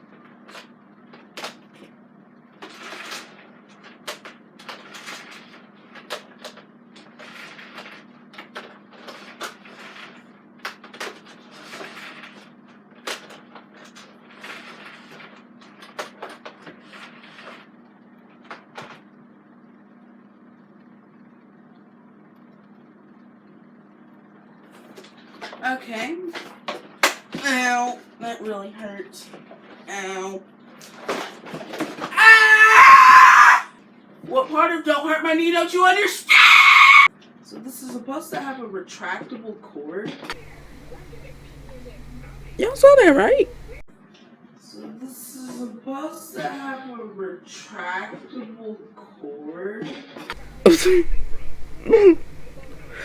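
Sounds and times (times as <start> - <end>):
low hum: 40.4 - 43.8.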